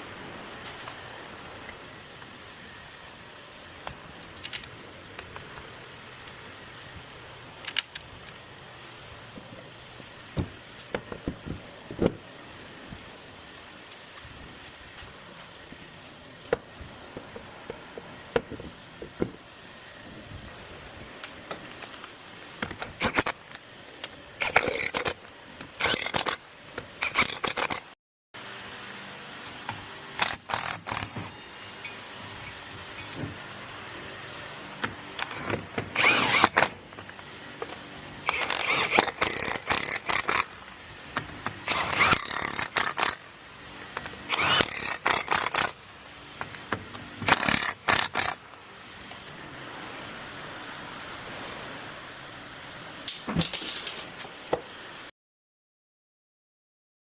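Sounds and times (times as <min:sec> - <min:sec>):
rapid rattling of tools: 0:21.2 - 0:28.0, 0:29.4 - 0:32.0, 0:34.8 - 0:49.3, 0:53.1 - 0:54.2
metal tools clicking and clinking: 0:29.4 - 0:32.1, 0:53.1 - 0:54.1.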